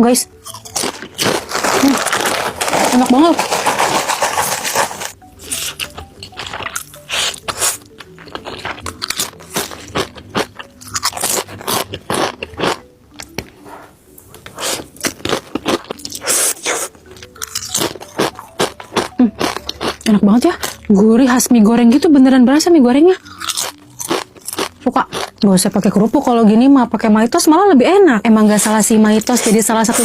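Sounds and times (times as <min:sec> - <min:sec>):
background music: 0:00.0 - 0:30.0
crunching and chewing chips: 0:00.4 - 0:13.7, 0:14.4 - 0:20.9, 0:23.2 - 0:25.4, 0:28.5 - 0:30.0.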